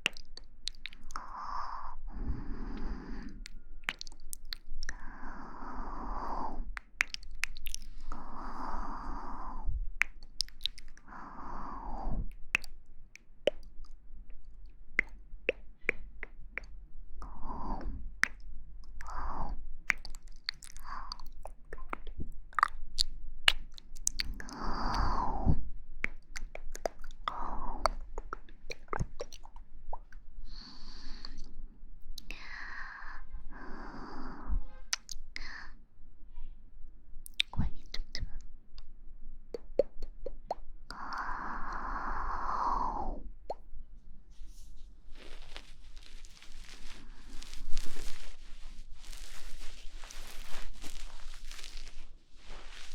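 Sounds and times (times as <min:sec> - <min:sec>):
wet mouth clicks and smacks: 0:00.0 - 0:01.6, 0:03.4 - 0:05.2, 0:06.7 - 0:08.7, 0:10.0 - 0:11.2, 0:12.2 - 0:25.2, 0:26.0 - 0:30.2, 0:31.0 - 0:31.5, 0:32.1 - 0:32.5, 0:34.9 - 0:35.5, 0:37.2 - 0:38.9, 0:39.5 - 0:41.9, 0:45.1 - 0:52.9
soft breathy exhale: 0:01.2 - 0:03.6, 0:04.9 - 0:06.7, 0:08.0 - 0:09.8, 0:11.0 - 0:12.3, 0:32.4 - 0:34.7, 0:40.9 - 0:43.3.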